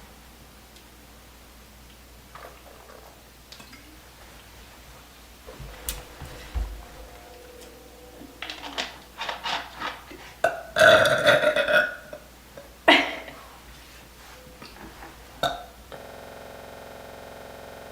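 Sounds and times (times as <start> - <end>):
steady hum: 0.0 - 17.9
girl burping loudly: 10.4 - 13.4, 15.4 - 15.8.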